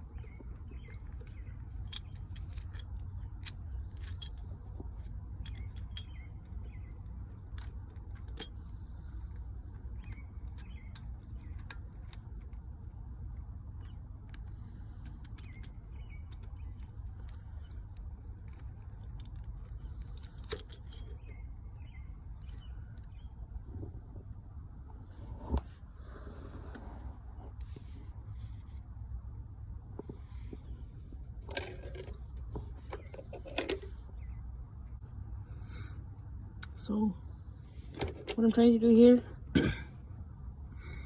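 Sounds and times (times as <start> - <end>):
metallic clicks of hand tools: 0.2 - 4.5, 5.4 - 8.8.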